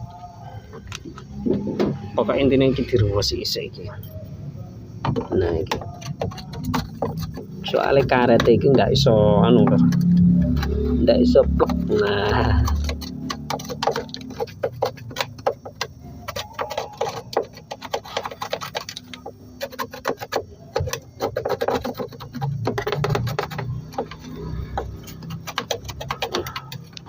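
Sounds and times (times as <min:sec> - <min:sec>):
clicks taps and scraping: 0:05.0 - 0:27.0.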